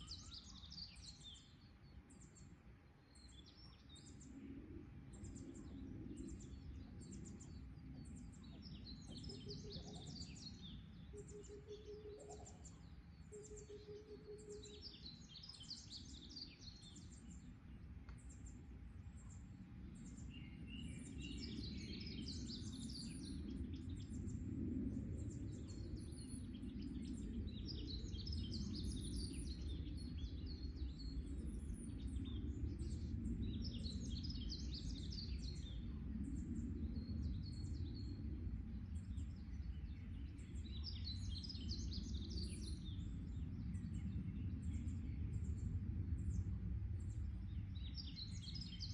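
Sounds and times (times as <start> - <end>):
songbirds chirping: 0.0 - 48.9
low background rumble: 15.0 - 48.9.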